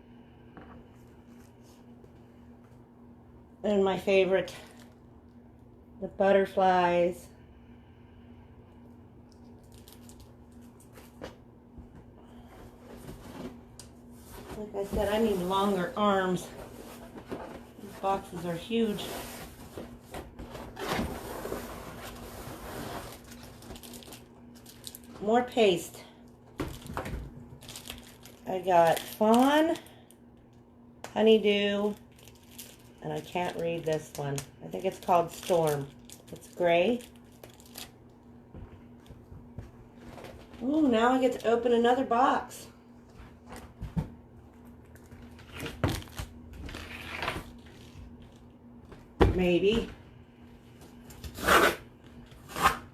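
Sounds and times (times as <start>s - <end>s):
cardboard and packing rustling: 9.7s - 25.7s, 26.5s - 29.8s, 34.8s - 41.3s, 43.0s - 50.0s
packaging rustling in cardboard box: 12.7s - 25.2s.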